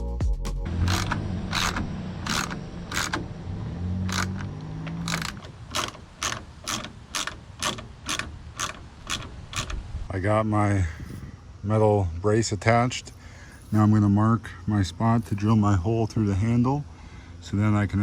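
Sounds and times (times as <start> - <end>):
ratchet wrench clicking: 0.8 - 3.3, 4.0 - 9.9.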